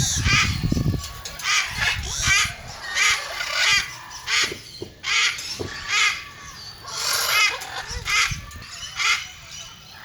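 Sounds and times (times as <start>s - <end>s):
parrots squawking: 0.0s - 10.0s.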